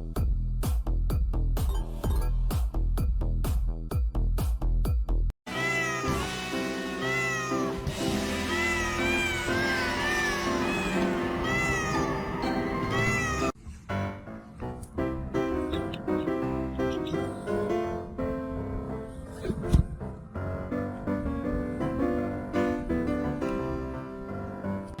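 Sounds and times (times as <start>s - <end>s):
background music: 5.5s - 25.0s
kitten mewing: 8.3s - 13.5s.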